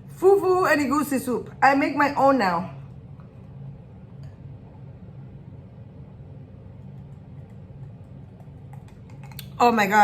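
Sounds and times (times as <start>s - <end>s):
low hum: 0.0s - 10.0s.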